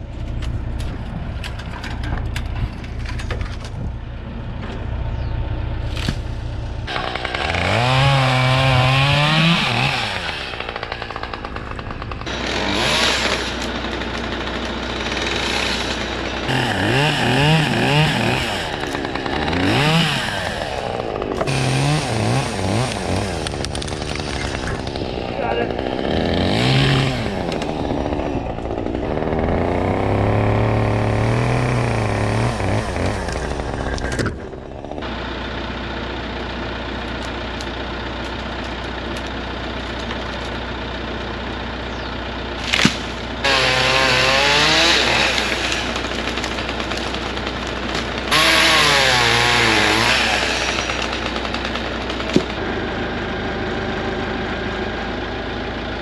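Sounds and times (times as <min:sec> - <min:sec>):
engine idling: 0:00.0 - 0:32.3, 0:32.9 - 0:56.0
chainsaw revving and cutting: 0:06.9 - 0:35.8, 0:42.6 - 0:56.0.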